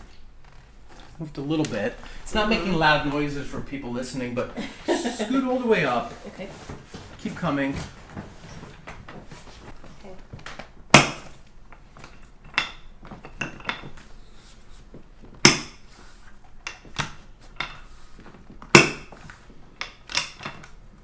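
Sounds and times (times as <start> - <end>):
knocks and clicks of hard objects: 16.6 - 19.2.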